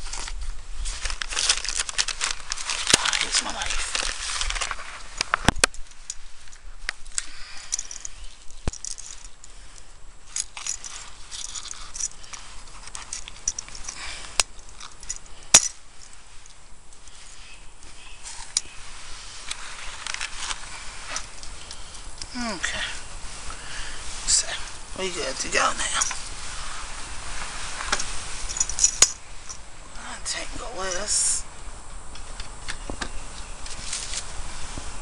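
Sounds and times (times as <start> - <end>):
light rustling: 0.0 - 35.0
metallic clicks and clinks: 5.1 - 17.0, 27.9 - 29.6.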